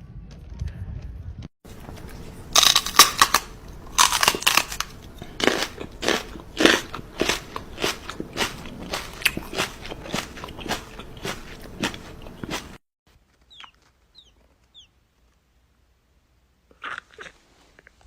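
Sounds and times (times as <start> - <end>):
crisp crunching: 1.7 - 12.8.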